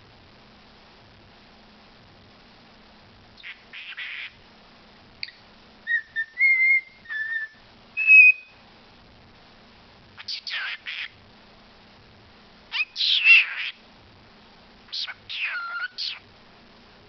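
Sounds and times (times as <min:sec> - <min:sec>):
bird whistling: 0:05.2 - 0:08.6, 0:12.7 - 0:13.8, 0:14.9 - 0:16.2.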